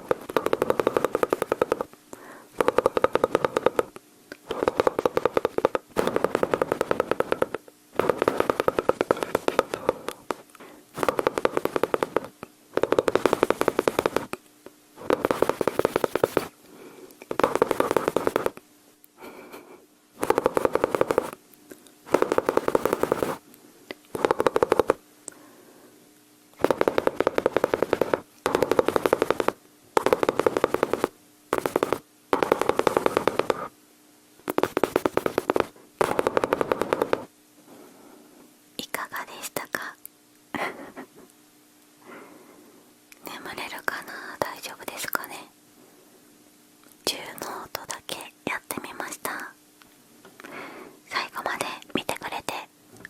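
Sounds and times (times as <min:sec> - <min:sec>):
mouth imitating machine-gun fire: 0:00.0 - 0:01.9, 0:02.6 - 0:03.9, 0:04.5 - 0:10.2, 0:11.0 - 0:14.4, 0:15.0 - 0:16.5, 0:17.3 - 0:18.6, 0:20.2 - 0:21.4, 0:22.1 - 0:23.4, 0:24.1 - 0:25.0, 0:26.6 - 0:33.7, 0:34.5 - 0:37.3.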